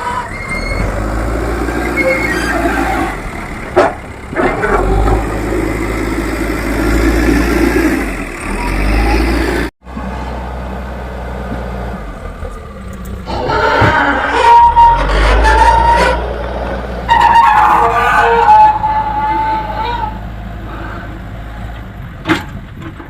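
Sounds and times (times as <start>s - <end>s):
diesel engine running under load: 0.0s - 14.2s, 18.8s - 23.0s.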